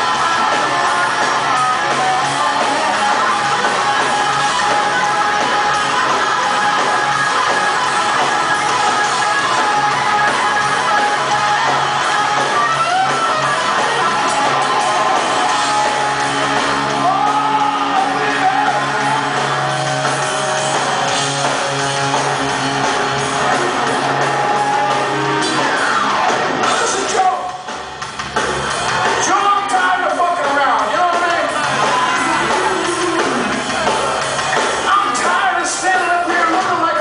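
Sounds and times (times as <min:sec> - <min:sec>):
electric guitar bending notes: 0:00.0 - 0:26.8
live rock band playing: 0:00.0 - 0:37.0.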